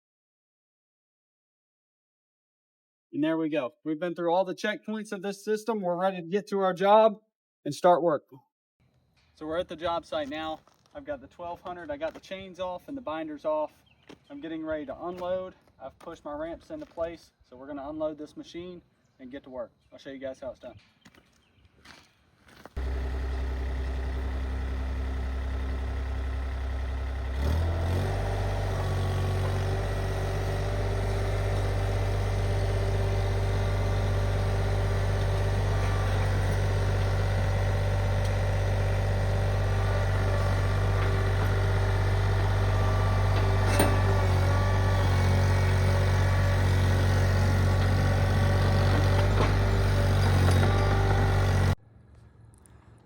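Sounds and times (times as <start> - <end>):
skid steer engine running: 22.8 - 51.8.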